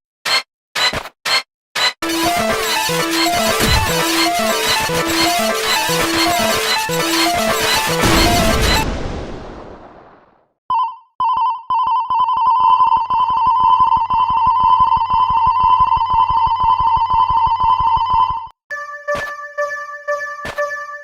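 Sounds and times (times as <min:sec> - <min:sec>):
pulsing electronic crossing alarm: 0:00.3 - 0:08.9.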